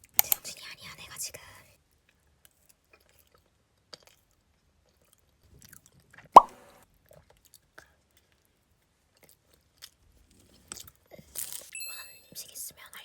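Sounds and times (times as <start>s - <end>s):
mouth clicks and chewing: 2.5s - 6.5s.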